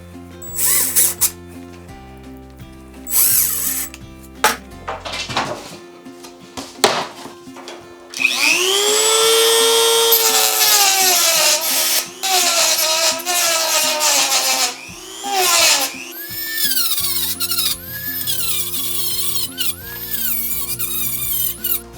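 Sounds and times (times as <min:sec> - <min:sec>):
table saw whine: 0:03.1 - 0:04.0, 0:08.1 - 0:21.9
knocks: 0:06.6 - 0:07.9.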